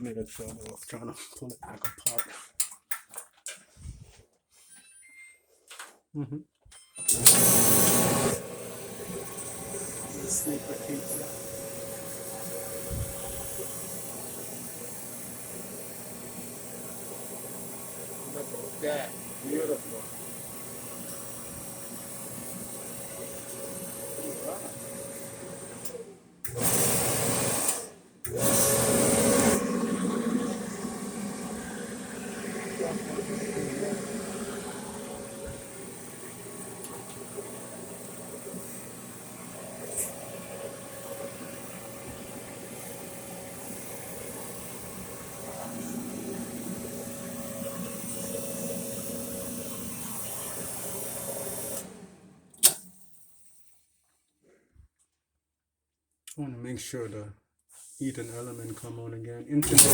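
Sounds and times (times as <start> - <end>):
clothes dryer running: 7.1 - 53.0, 59.6 - 59.9
sharp click: 52.6 - 53.0.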